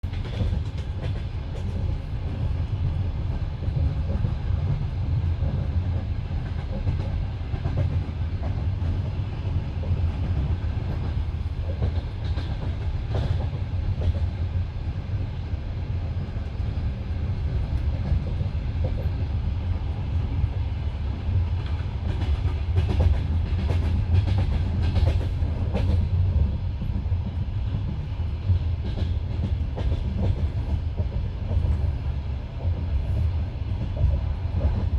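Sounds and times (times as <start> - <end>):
clickety-clack over rail joints: 0.0 - 34.9
train wheels rumbling on track: 0.0 - 34.9.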